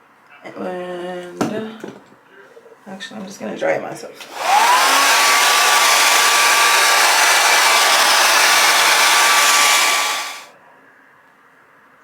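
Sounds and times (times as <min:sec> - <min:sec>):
hair dryer blowing with whine: 0:04.2 - 0:10.5.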